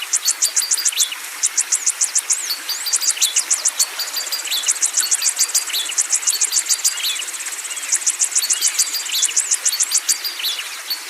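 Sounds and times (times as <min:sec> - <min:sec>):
birds chirping: 0:00.0 - 0:11.0
insect trill: 0:00.2 - 0:11.0.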